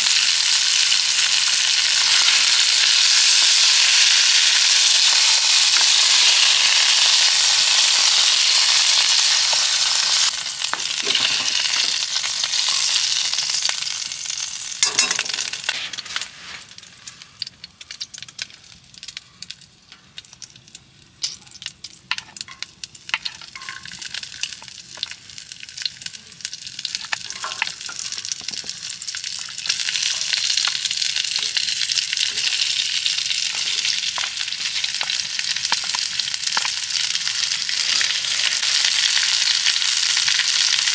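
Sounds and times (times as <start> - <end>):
food sizzling in a pan: 0.0 - 40.9
crackles and clicks: 10.3 - 38.9.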